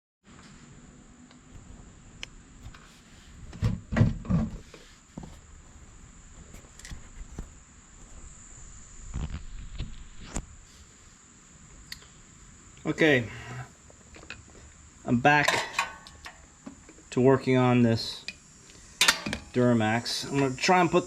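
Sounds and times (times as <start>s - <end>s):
faint high-pitched whine: 0.3s - 21.0s
low thumps and rustles: 1.5s - 11.2s.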